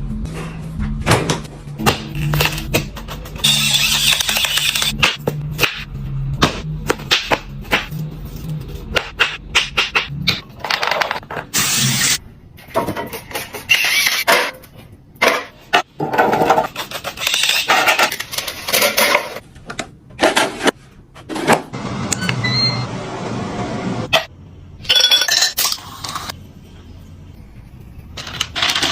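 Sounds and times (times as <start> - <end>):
kitchen clicks and clatters: 28.2 - 28.9.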